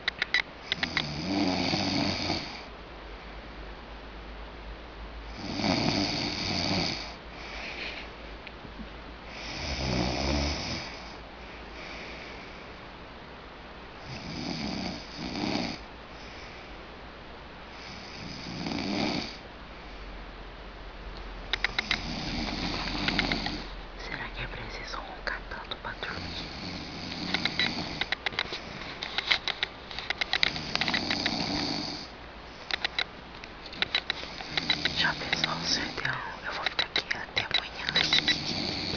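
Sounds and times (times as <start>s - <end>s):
sharp clicks: 0.0s - 1.1s, 21.5s - 23.6s, 27.2s - 31.7s, 32.6s - 38.9s
loud rasping snores: 0.8s - 2.6s, 5.4s - 7.2s, 9.4s - 10.9s, 14.1s - 15.8s, 17.9s - 19.4s, 21.7s - 23.7s, 26.2s - 28.0s, 30.5s - 32.1s, 34.4s - 35.3s, 38.0s - 38.9s.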